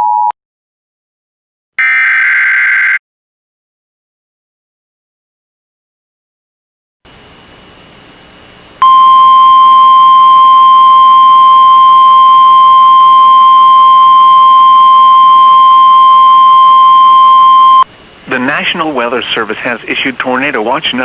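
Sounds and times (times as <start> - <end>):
steady warning alarm tone: 1.8 - 3.0.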